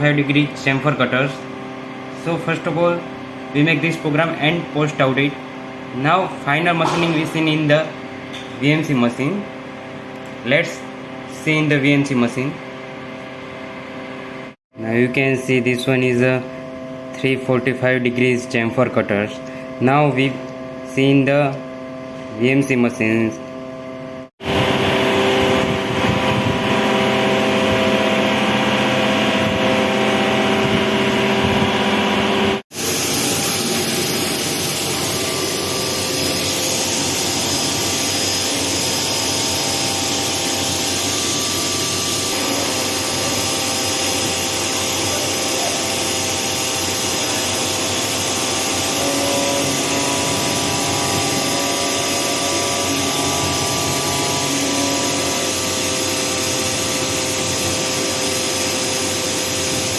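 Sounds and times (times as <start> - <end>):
milling machine cutting metal: 24.5 - 59.9.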